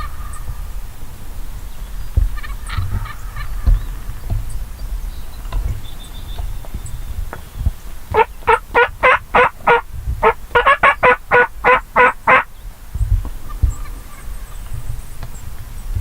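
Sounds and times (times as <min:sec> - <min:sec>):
turkey yelping: 0:08.1 - 0:12.5.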